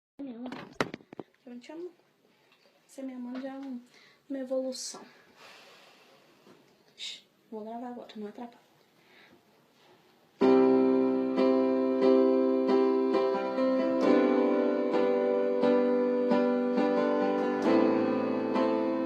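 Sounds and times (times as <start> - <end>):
piano chords: 10.4 - 19.0.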